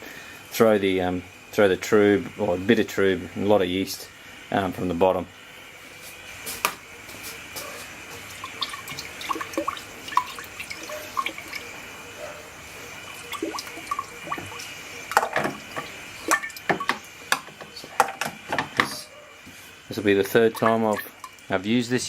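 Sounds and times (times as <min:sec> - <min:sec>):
liquid pouring and dripping: 0:08.2 - 0:11.9, 0:12.9 - 0:17.8, 0:20.2 - 0:21.5.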